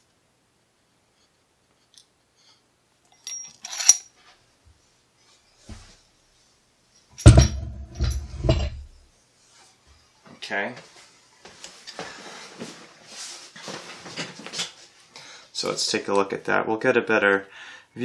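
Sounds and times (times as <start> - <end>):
metal parts clinking on hard surface: 3.1 - 4.1, 7.2 - 8.9.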